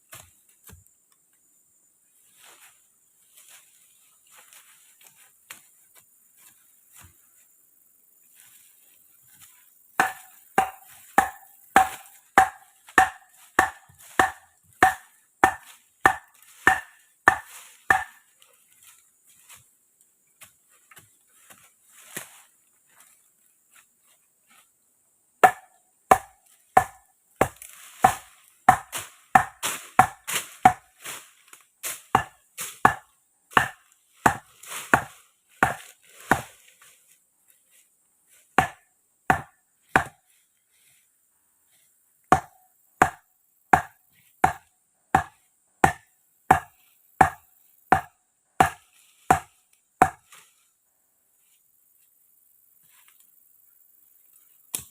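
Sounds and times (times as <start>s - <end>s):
wood chopping strokes: 0.0s - 0.9s, 9.3s - 19.6s, 25.4s - 41.0s, 42.3s - 50.5s.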